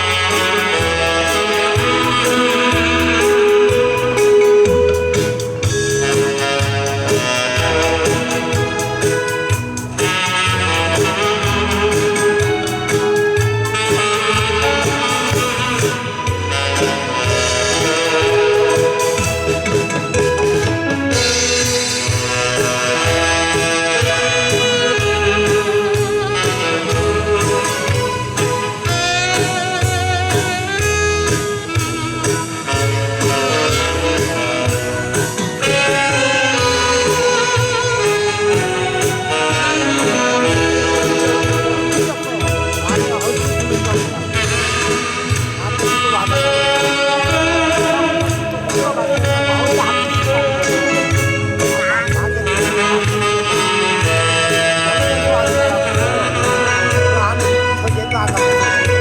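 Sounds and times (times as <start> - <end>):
steady bass beat: 0.0 - 20.4, 35.8 - 59.0
band accompaniment: 0.0 - 59.0
tenor saxophone melody: 0.0 - 59.0.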